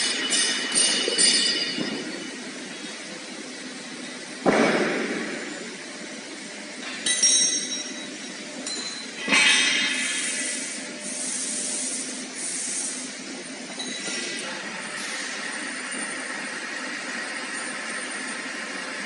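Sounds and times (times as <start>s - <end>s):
sharp metal clanks: 0.0s - 2.3s, 8.6s - 10.1s
machine background noise: 0.0s - 19.0s.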